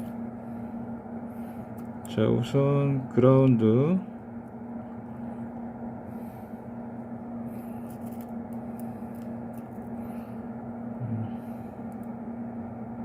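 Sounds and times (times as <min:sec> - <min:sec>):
extractor fan humming: 0:00.0 - 0:13.0.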